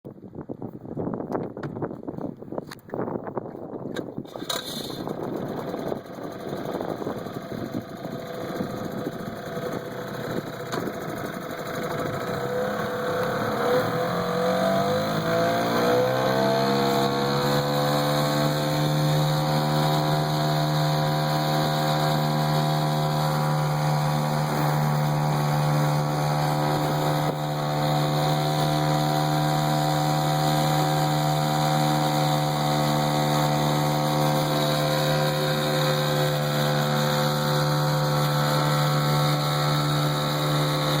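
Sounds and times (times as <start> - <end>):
outboard motor running: 3.9 - 41.0.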